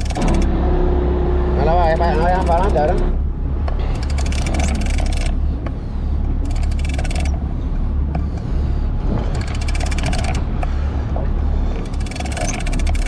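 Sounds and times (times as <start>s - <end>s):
boat engine running: 0.0s - 13.0s
fishing reel clicking: 4.0s - 5.4s, 6.5s - 7.4s, 11.9s - 13.0s.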